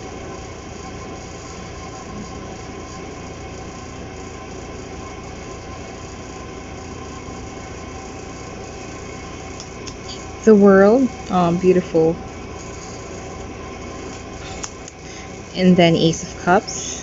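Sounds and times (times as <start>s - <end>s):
mechanical room hum: 0.0s - 17.0s.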